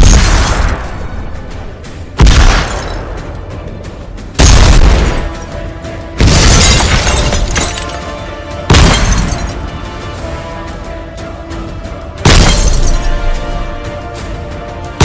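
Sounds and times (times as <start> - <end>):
background music: 0.0 - 15.0
glass shattering and debris: 6.2 - 8.1, 8.7 - 9.6, 12.3 - 13.2.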